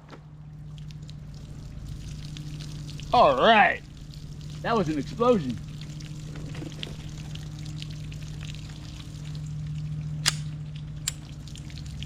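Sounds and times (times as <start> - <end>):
water pouring from plastic bottles: 0.6 - 9.8
sharp click: 10.2 - 10.5.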